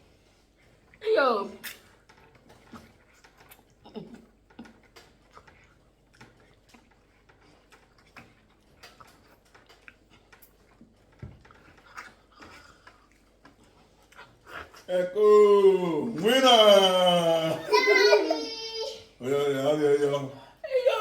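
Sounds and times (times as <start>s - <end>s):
clicks and knocks of eating: 1.6s - 14.9s.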